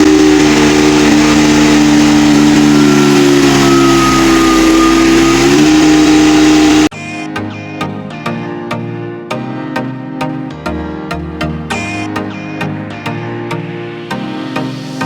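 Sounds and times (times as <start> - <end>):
diesel generator running: 0.0 - 6.9.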